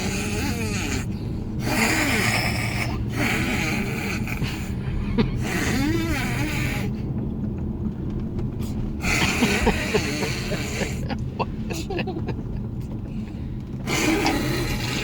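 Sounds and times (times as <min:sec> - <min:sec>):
low cabin hum: 0:00.0 - 0:15.0
child making growly monster noises: 0:13.9 - 0:15.0.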